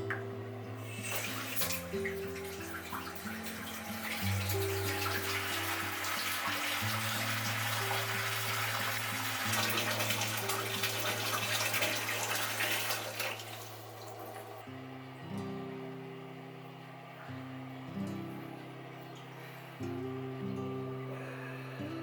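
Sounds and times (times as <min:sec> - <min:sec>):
water running with soft hiss: 0:00.0 - 0:14.6
quiet background music: 0:00.0 - 0:22.0.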